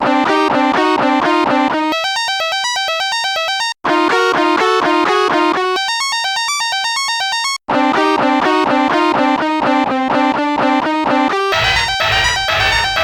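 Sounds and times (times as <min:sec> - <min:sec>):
synthesizer arpeggio electronic music: 0:02.0 - 0:07.6, 0:11.4 - 0:13.0.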